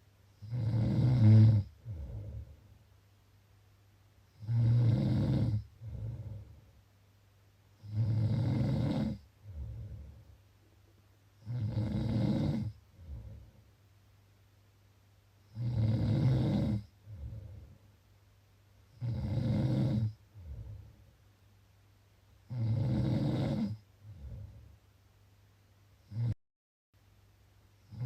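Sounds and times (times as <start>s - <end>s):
person snoring: 0.4s - 2.6s, 4.4s - 6.6s, 7.8s - 10.2s, 11.4s - 13.5s, 15.5s - 17.6s, 18.9s - 20.9s, 22.5s - 24.6s, 26.1s - 26.4s
soft breath: 1.7s - 2.8s, 5.7s - 6.8s, 9.3s - 10.8s, 12.8s - 13.8s, 16.9s - 18.0s, 20.3s - 21.2s, 24.0s - 24.8s.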